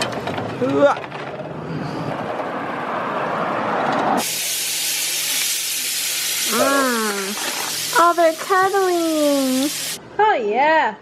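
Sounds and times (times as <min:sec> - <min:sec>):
steak sizzling in a hot pan: 0:04.2 - 0:10.0.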